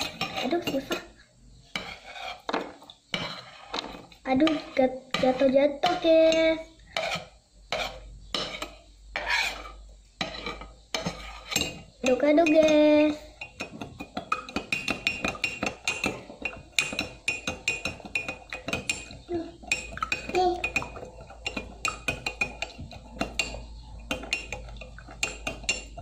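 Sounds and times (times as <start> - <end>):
metal spoon clinking while stirring: 6.2 - 26.0.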